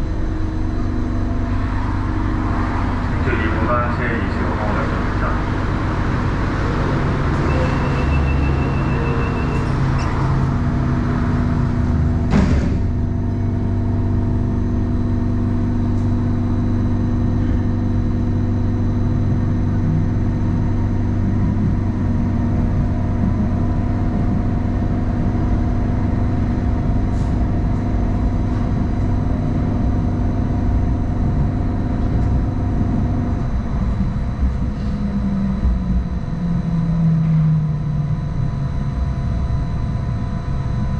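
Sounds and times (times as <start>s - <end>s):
train motor hum: 0.0s - 40.9s
wheels rumbling on track: 0.0s - 40.9s.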